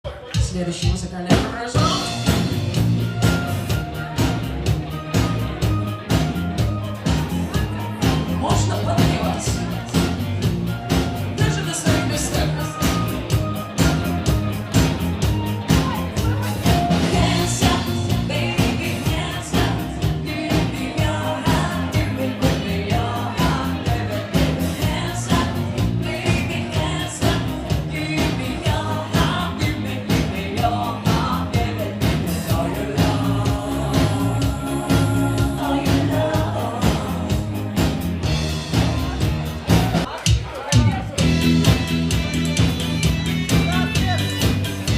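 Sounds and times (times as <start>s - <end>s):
band playing a song: 0.1s - 44.9s
person singing: 11.4s - 14.0s, 15.7s - 38.3s.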